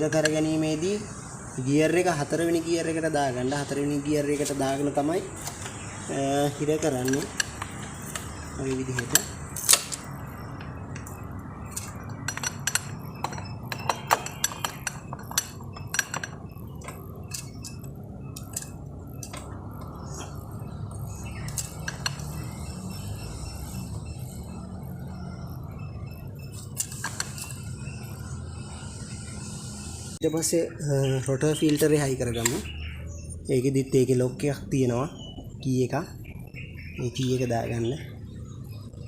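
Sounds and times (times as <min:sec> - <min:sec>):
steady low hum: 0:00.0 - 0:39.0
metal tools clinking: 0:06.8 - 0:19.5.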